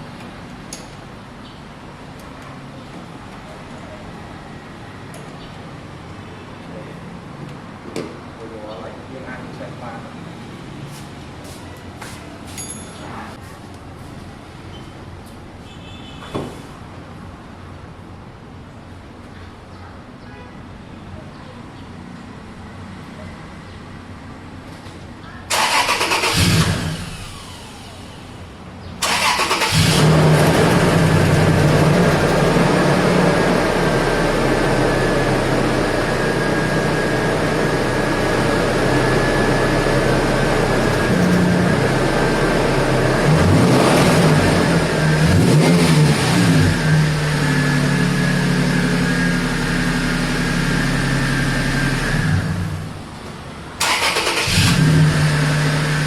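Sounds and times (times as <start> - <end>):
car engine cranking and running: 25.5 - 28.1, 29.0 - 52.9, 53.8 - 56.0.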